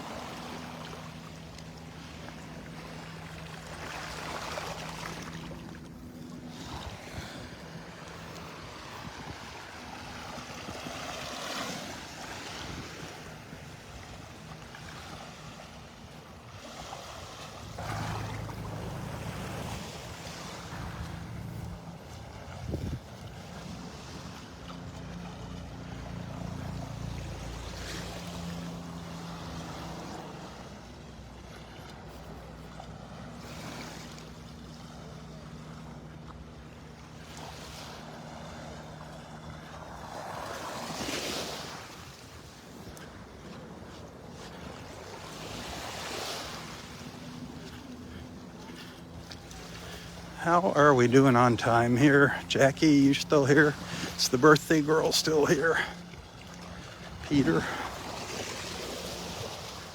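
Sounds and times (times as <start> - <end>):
surf washing onto beach: 0.0 - 30.8, 37.2 - 59.9
low engine hum: 0.0 - 59.9
wind on microphone: 19.4 - 24.4.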